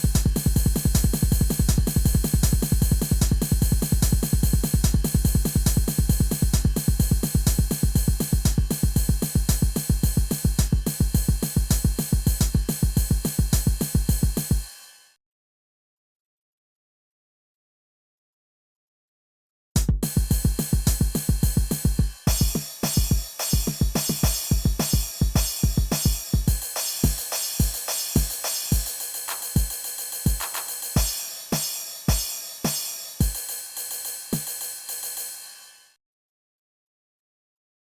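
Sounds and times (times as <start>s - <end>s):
kick drum: 0.0s - 14.7s, 19.8s - 28.9s, 29.6s - 31.2s, 32.1s - 32.3s, 33.2s - 33.4s
hi-hat and snare strokes: 0.0s - 15.2s, 19.8s - 36.0s.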